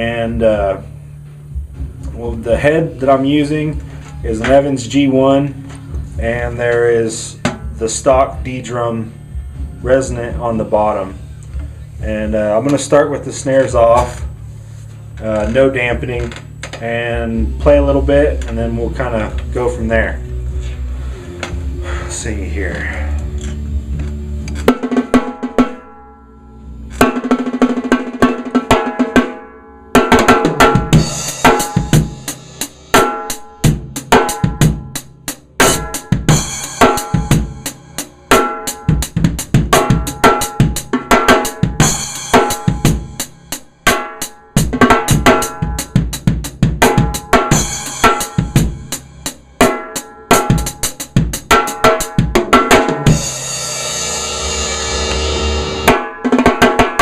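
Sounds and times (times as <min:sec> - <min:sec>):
drum beat with bass drum: 0:00.0 - 0:25.8, 0:26.9 - 0:29.4, 0:30.0 - 0:57.0
cymbals: 0:30.0 - 0:57.0.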